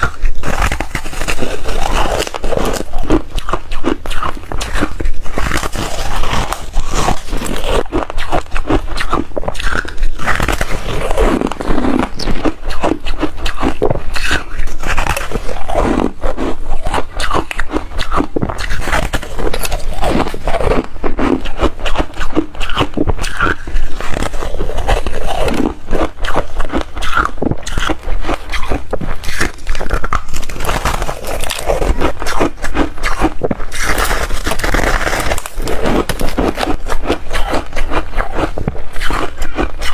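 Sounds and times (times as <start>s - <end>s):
ice being crunched and chewed: 0.0s - 39.9s.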